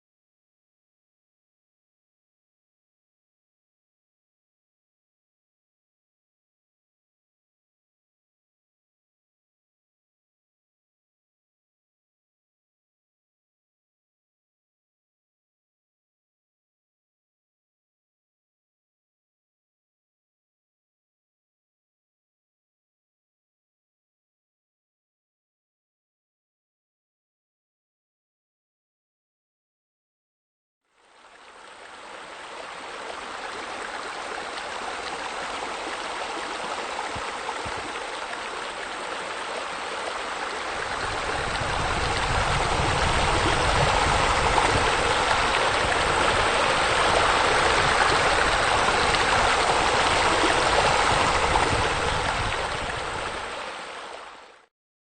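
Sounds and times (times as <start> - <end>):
waterfall splashing into pool: 31.7 - 54.4.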